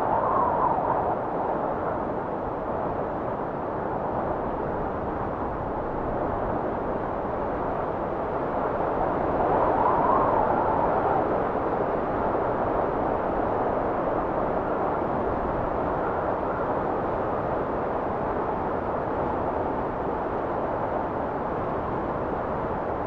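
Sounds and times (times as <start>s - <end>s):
wind blowing: 0.0s - 2.8s, 8.9s - 13.0s.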